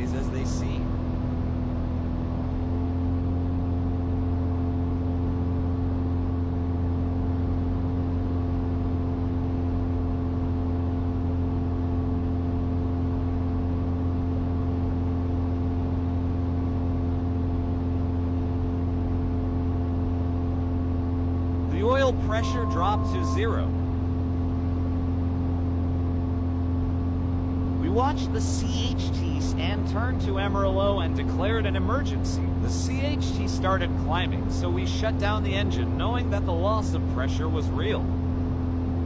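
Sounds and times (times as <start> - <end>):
propeller airplane engines droning: 0.0 - 39.0.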